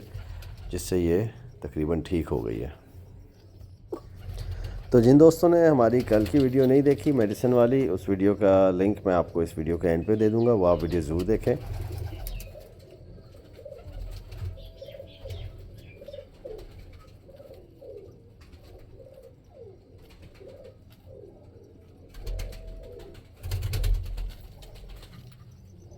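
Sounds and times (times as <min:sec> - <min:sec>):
pigeon cooing: 0:00.0 - 0:02.6, 0:03.6 - 0:05.3, 0:10.0 - 0:25.9.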